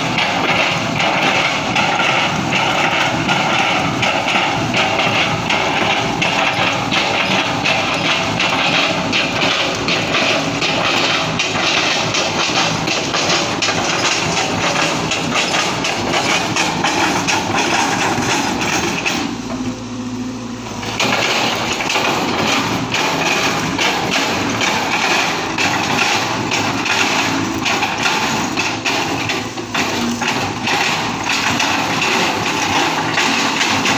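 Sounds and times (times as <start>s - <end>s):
steel scraping earth and rock: 0.0s - 19.4s
excavator engine running: 0.0s - 33.9s.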